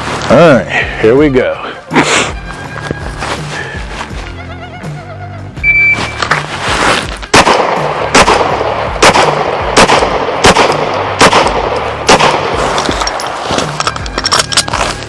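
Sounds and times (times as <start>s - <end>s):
pistol shots: 7.3s - 13.9s.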